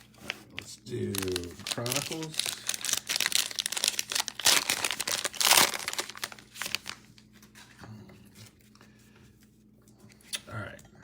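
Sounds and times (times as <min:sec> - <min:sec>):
plastic wrapper tearing and crinkling: 0:00.8 - 0:07.3.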